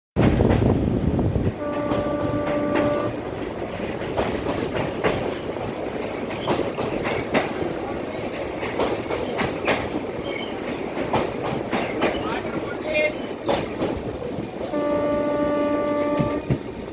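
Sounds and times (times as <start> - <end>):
train wheels clattering on track: 0.2 - 16.9
train horn blast: 1.6 - 3.2, 14.7 - 16.6.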